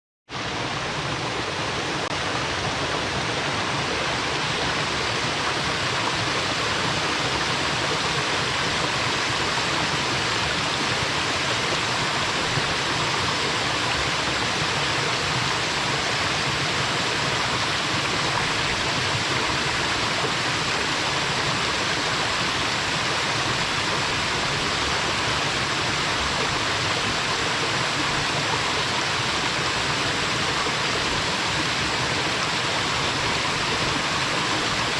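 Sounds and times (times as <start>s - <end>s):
waterfall rushing: 0.4s - 34.9s.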